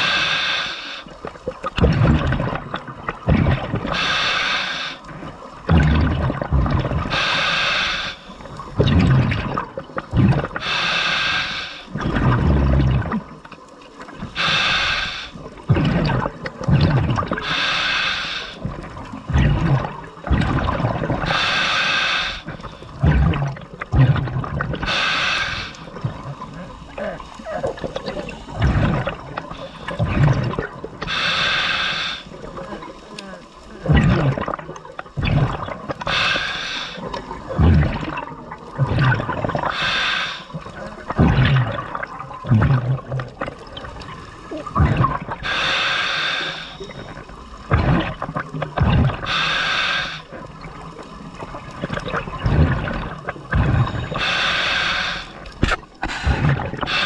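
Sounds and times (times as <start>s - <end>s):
regulator hiss on inhale: 0.0s - 1.2s, 3.9s - 5.1s, 7.0s - 8.7s, 10.6s - 12.0s, 14.3s - 15.5s, 17.4s - 18.7s, 21.2s - 23.0s, 24.8s - 27.4s, 28.2s - 30.1s, 31.0s - 33.7s, 36.0s - 37.4s, 39.7s - 40.8s, 45.4s - 47.2s, 49.2s - 50.4s, 53.8s - 57.0s
exhaled bubbles gushing: 0.0s - 57.0s.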